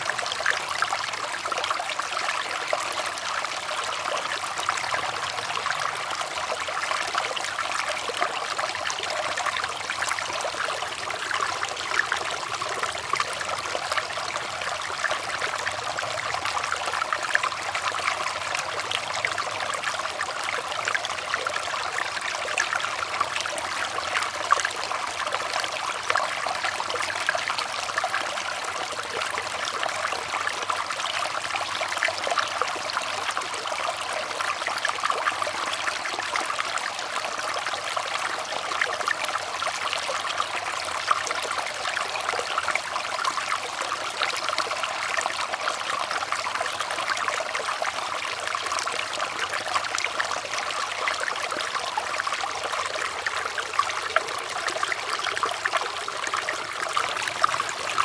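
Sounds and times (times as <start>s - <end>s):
water trickling and splashing: 0.0s - 58.0s.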